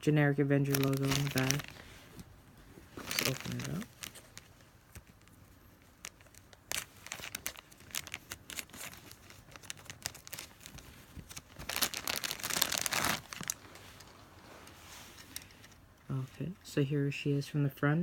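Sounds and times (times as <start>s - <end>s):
toy packaging being torn open: 0.7s - 1.8s, 3.0s - 5.2s, 6.0s - 13.6s.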